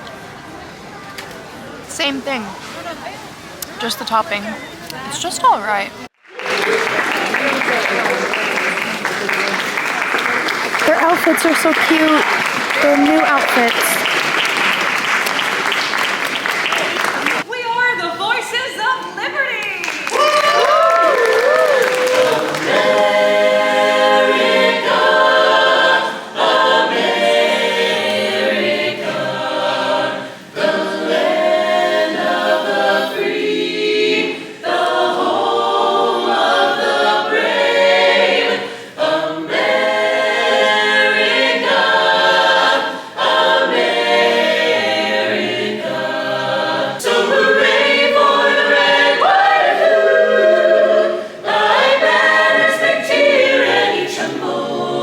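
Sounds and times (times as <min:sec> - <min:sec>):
a cappella ensemble singing: 0:21.3 - 0:55.0.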